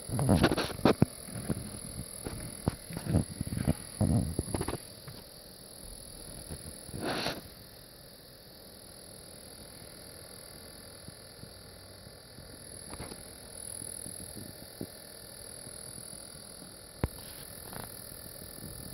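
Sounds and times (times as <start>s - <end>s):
ticks and knocks in fan: 0.0s - 5.3s
machine fan noise: 0.0s - 7.7s, 11.0s - 18.9s.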